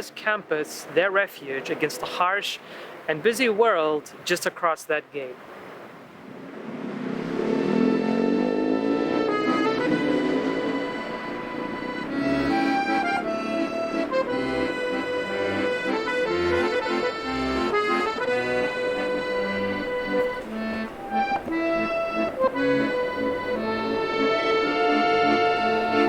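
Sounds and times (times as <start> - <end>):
accordion music: 7.3 - 26.0.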